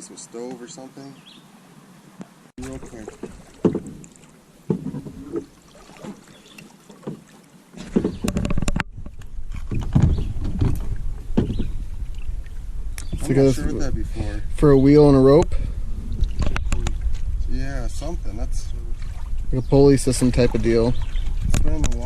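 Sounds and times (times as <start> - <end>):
water splashing: 2.6 - 22.0
knocks on kayak hull: 3.2 - 4.1, 4.7 - 6.2, 7.0 - 11.8
wind rumble on microphone: 7.8 - 22.0.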